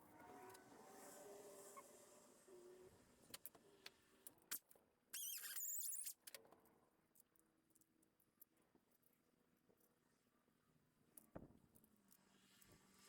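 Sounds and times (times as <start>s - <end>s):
small parts clicking and tapping: 3.3s - 10.0s
high wavering squeak: 5.2s - 6.2s.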